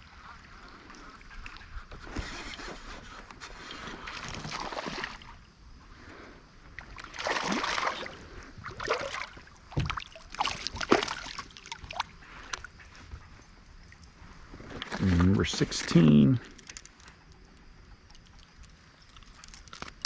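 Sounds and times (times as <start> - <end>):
water splashing around a kayak: 0.0 - 5.5, 6.6 - 13.2.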